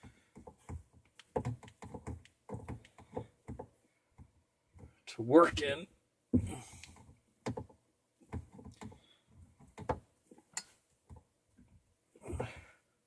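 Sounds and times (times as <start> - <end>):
plastic pipe fittings clicking: 0.3 - 3.7.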